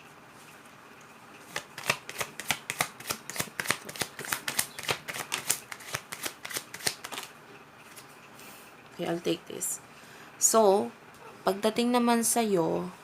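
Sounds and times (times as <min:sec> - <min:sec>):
cards being shuffled by hand: 0:01.4 - 0:08.1.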